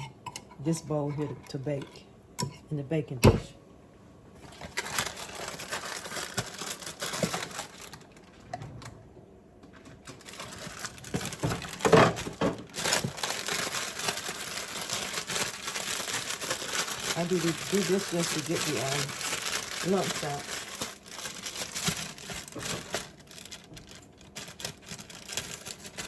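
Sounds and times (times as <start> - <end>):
plastic bag crinkling: 4.4 - 8.6, 9.7 - 26.0.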